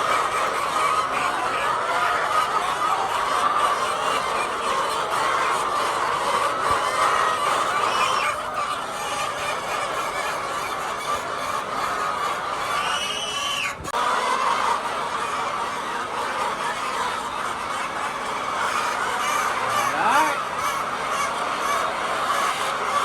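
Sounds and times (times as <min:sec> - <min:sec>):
hens clucking: 0:00.0 - 0:23.0.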